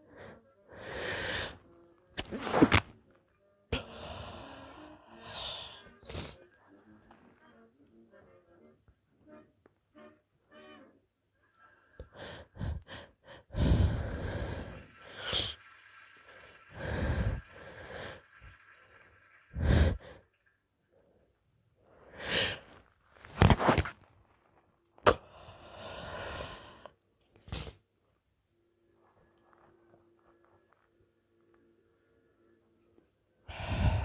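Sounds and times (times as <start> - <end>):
woman gasping breaths: 12.0 - 15.6, 16.7 - 18.3, 33.5 - 34.0.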